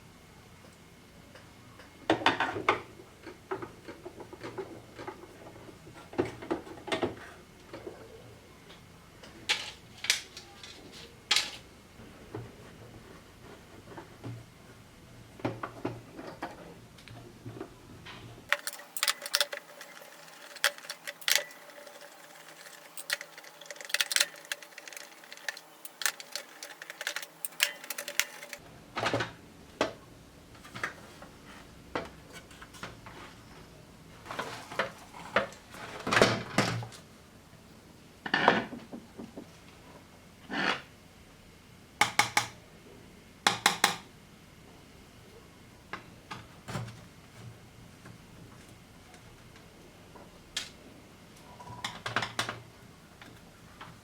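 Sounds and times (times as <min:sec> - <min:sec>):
small plastic parts clattering: 0:18.5 - 0:29.2.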